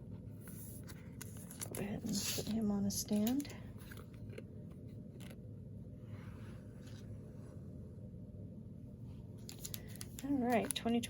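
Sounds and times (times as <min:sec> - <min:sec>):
low room hum: 0:00.0 - 0:11.0
trading cards rustling: 0:00.4 - 0:05.4, 0:09.4 - 0:11.0.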